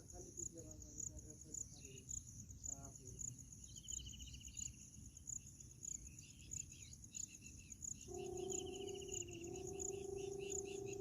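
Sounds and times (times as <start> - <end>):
crickets chirping: 0.0 - 11.0
quail calls: 8.1 - 11.0.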